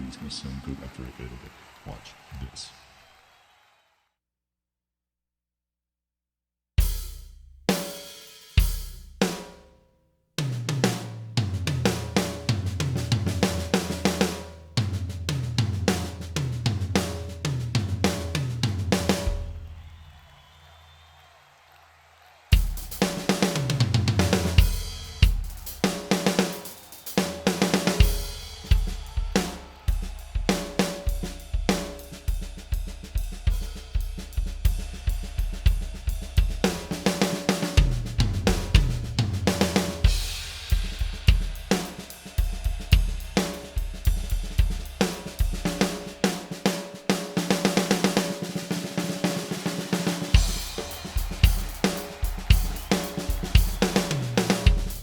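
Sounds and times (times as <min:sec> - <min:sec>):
snare drum hits: 0:36.6 - 0:55.0.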